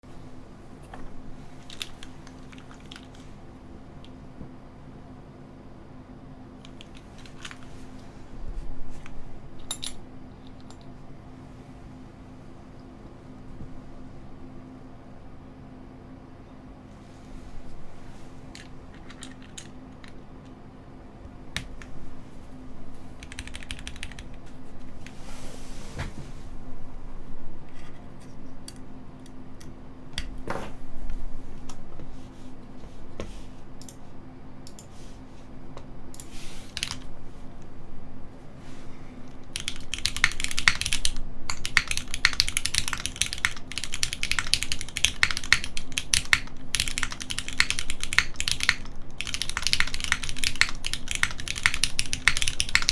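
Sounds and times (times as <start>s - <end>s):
mechanical keyboard typing: 1.6s - 3.3s, 6.6s - 7.7s, 18.6s - 20.2s, 23.2s - 24.4s, 36.7s - 37.1s, 39.5s - 52.9s.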